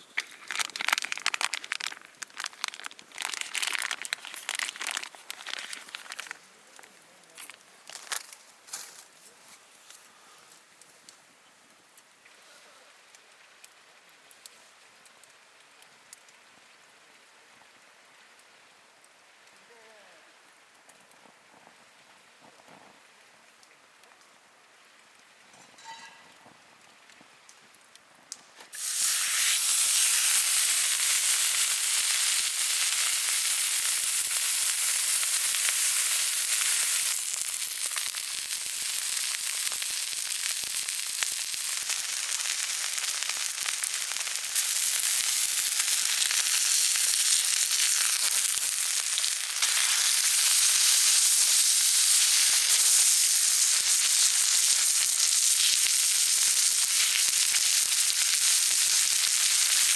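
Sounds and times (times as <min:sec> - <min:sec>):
fat popping and spattering: 0:00.0 - 0:06.4, 0:28.7 - 0:59.9
steak sizzling in a hot pan: 0:28.7 - 0:59.9.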